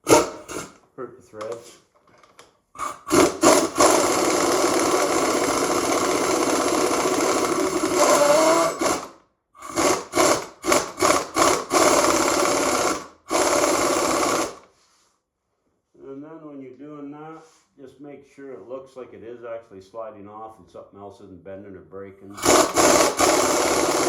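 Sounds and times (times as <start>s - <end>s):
power tool turning bolt: 0.0s - 0.8s, 1.4s - 14.7s, 22.4s - 24.0s.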